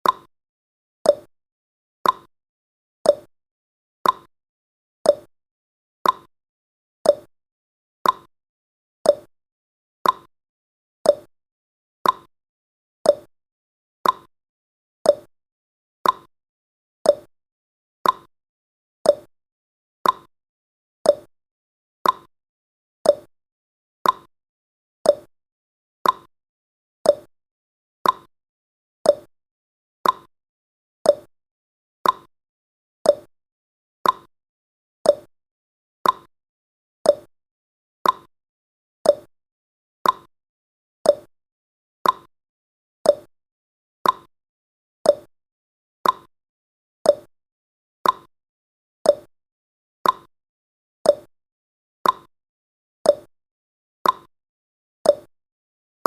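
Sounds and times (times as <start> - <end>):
clock ticking: 34.0 - 34.3, 36.0 - 36.3, 42.0 - 42.3, 46.0 - 46.3.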